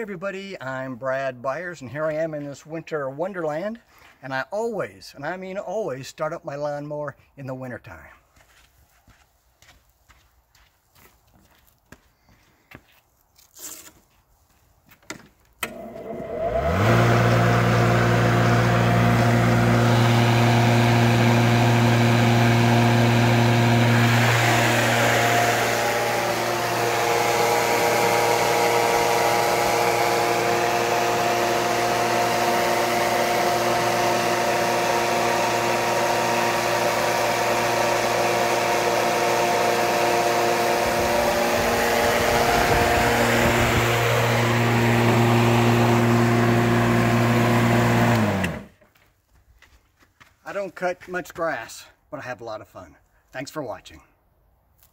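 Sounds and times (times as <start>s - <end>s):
lawn mower engine starting: 15.1s - 48.8s.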